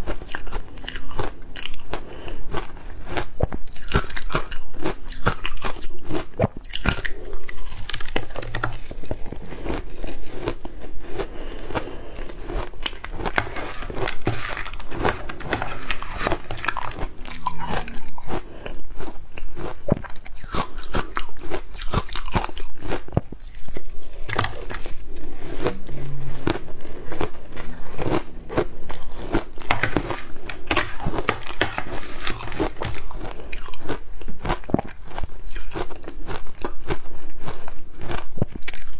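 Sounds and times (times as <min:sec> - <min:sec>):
ice crunching and chewing: 0:00.0 - 0:38.9.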